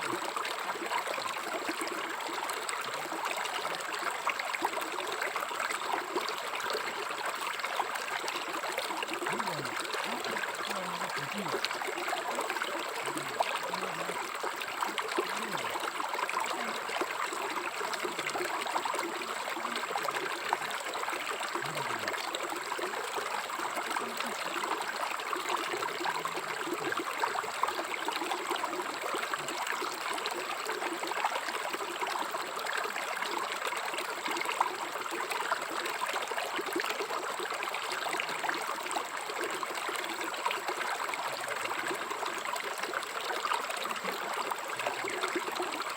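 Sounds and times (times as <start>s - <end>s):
river water flowing: 0.0s - 45.9s
small water splashes: 0.0s - 45.9s.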